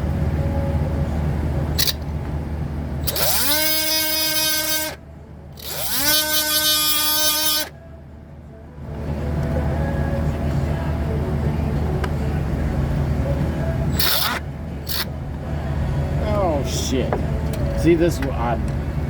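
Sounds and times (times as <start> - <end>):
electric drill running: 3.0 - 5.0, 5.6 - 7.7.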